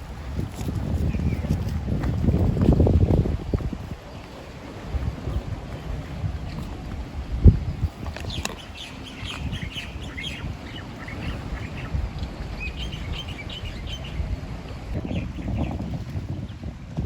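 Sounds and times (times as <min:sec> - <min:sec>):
wind rumbling on microphone: 0:00.0 - 0:17.0
small birds chirping: 0:01.0 - 0:01.8, 0:07.5 - 0:16.6.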